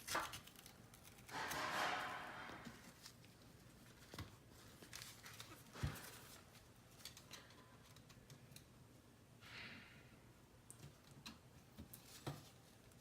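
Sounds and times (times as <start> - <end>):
scratchy tape rustle: 0.0 - 8.7.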